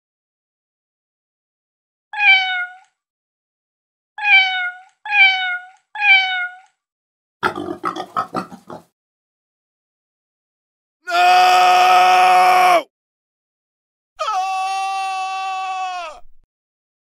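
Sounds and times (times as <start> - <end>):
cat meowing: 2.2 - 3.0, 4.2 - 6.8
rough animal grunts: 7.4 - 8.9.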